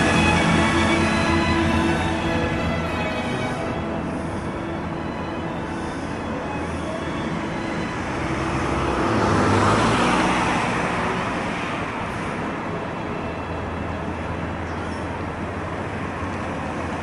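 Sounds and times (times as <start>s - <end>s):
vehicle passing by: 0.0s - 12.4s.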